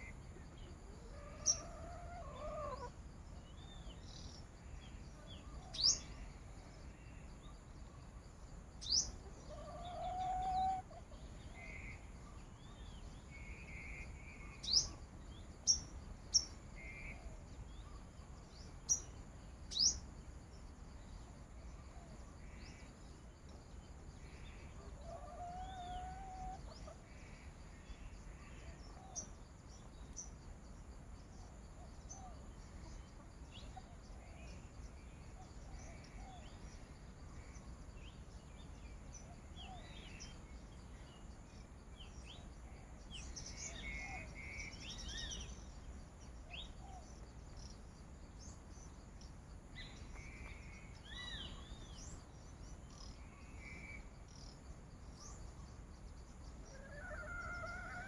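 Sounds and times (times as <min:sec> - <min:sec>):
wild bird calls: 0:00.0 - 0:08.2, 0:08.8 - 0:15.0, 0:23.8 - 0:30.3, 0:42.0 - 0:47.7, 0:56.5 - 0:58.0.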